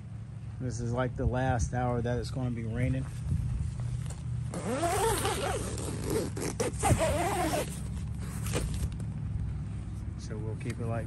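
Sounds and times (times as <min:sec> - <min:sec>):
steady low hum: 0:00.0 - 0:11.0
tent zipper being pulled: 0:04.5 - 0:09.0.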